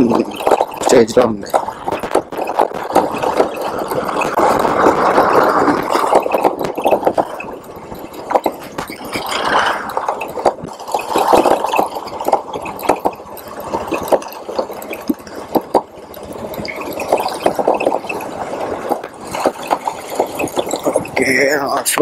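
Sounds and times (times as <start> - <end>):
wind on microphone: 0.0 - 21.4
knocks and rattles from bumps: 0.0 - 22.0
motorcycle engine: 0.0 - 22.0.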